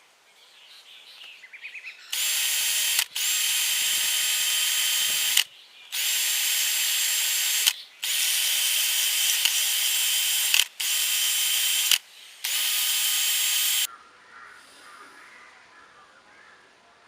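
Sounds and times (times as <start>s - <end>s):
power sharpener whine and grind: 2.2s - 5.4s, 6.0s - 13.9s.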